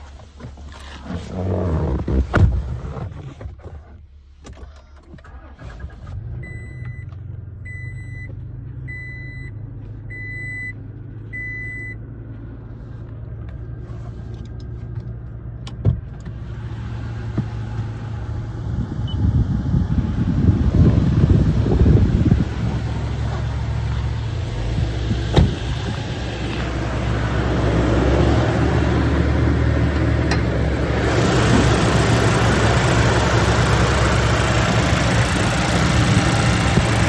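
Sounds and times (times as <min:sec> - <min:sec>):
car engine idling: 0:09.5 - 0:37.0.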